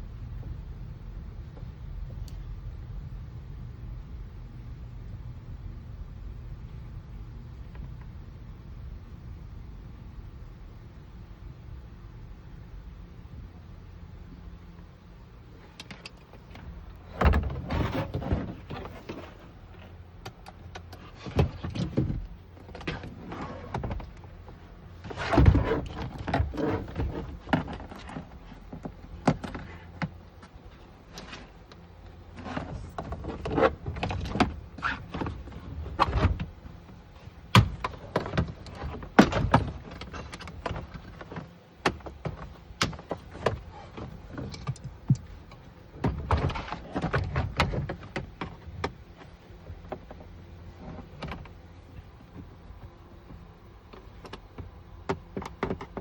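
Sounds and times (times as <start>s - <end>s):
hand work clicks and rattles on car door: 15.8s - 24.3s, 25.0s - 31.8s, 32.4s - 51.6s, 53.3s - 56.0s.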